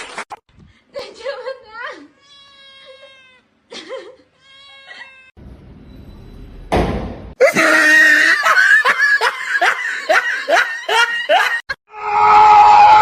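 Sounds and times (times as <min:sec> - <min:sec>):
person laughing in short bursts: 0:07.4 - 0:11.6
loud long high cry: 0:07.4 - 0:13.0.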